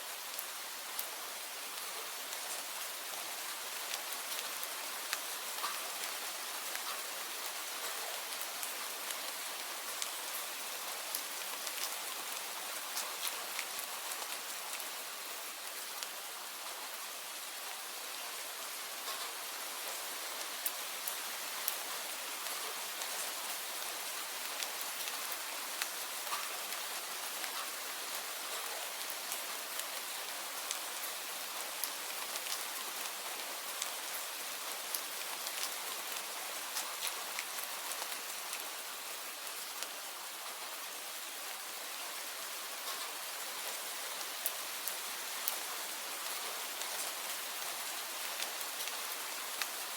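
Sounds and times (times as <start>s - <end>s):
raindrops ticking on surface: 0.1s - 49.9s.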